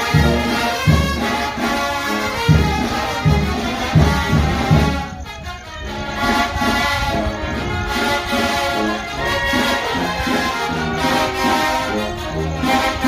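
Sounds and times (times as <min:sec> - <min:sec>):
brass band playing: 0:00.0 - 0:13.0
trumpets and trombones melody: 0:00.0 - 0:13.0.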